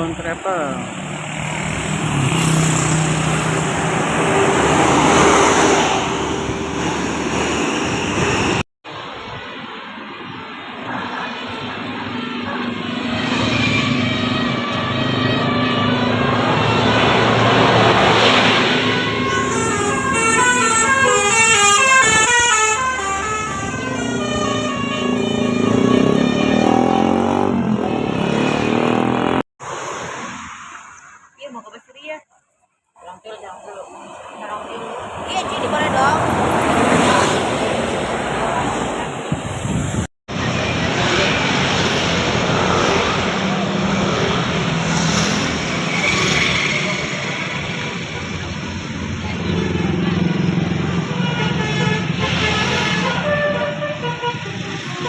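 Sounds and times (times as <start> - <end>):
bus passing close by: 0.8 - 31.0, 33.7 - 55.0
bus musical horn playing a tune: 18.9 - 28.4, 50.8 - 55.0.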